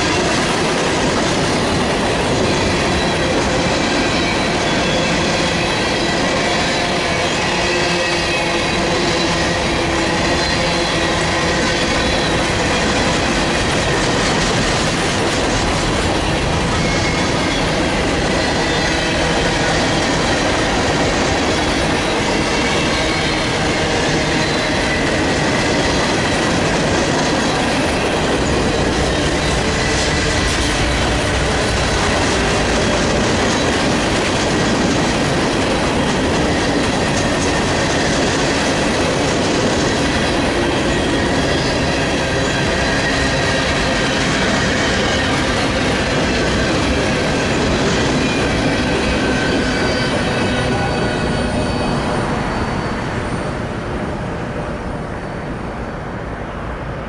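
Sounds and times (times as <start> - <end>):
train wheels rumbling on rail: 0.0 - 57.0
faint wheel squeal: 49.2 - 53.6.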